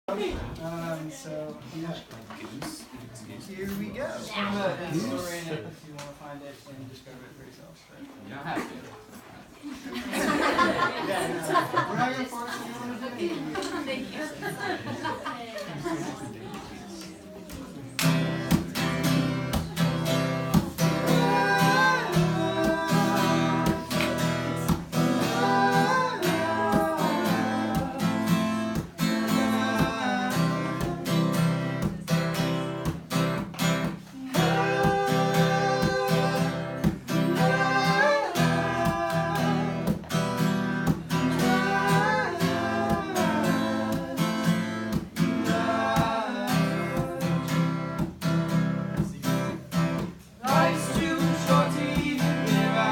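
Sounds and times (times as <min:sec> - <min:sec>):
acoustic guitar strumming: 0:18.0 - 0:52.9
person singing: 0:20.5 - 0:32.2, 0:34.1 - 0:40.1, 0:41.1 - 0:47.8, 0:50.4 - 0:52.9.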